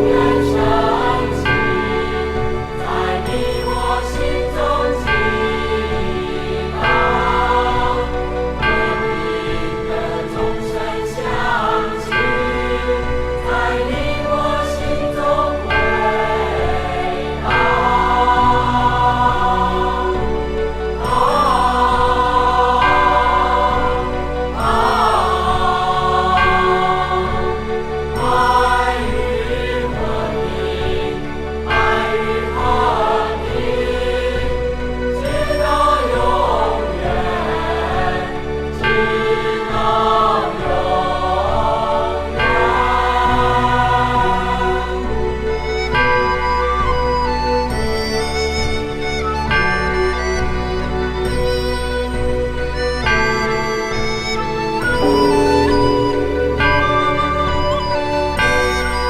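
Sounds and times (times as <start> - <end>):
low accompaniment: 0.0 - 3.6, 54.5 - 59.0
choir singing: 0.0 - 45.2, 54.4 - 59.0.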